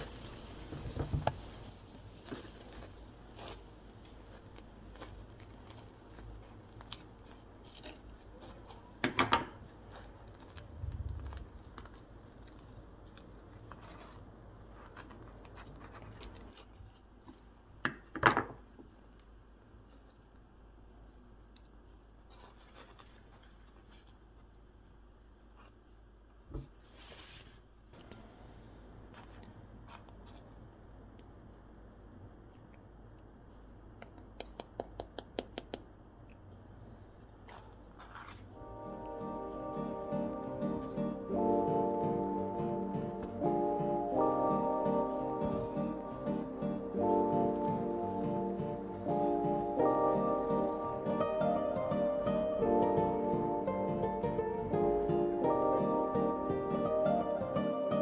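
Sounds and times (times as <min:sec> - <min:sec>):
bread crust crackling: 0:00.0 - 0:08.8, 0:09.7 - 0:17.6.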